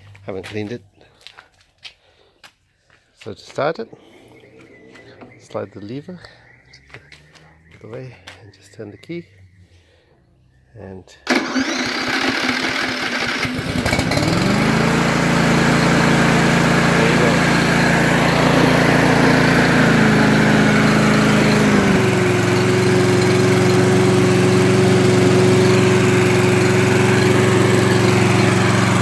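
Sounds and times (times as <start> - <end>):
lawn mower engine running: 11.2 - 29.0.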